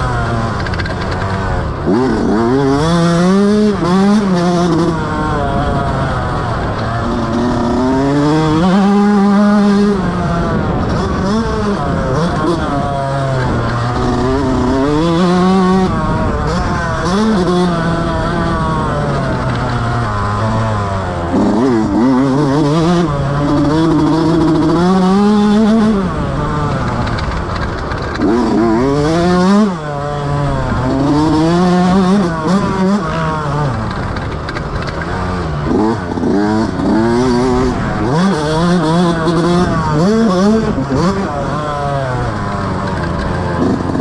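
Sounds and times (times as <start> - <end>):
motocross bike engine revving: 0.0 - 44.0.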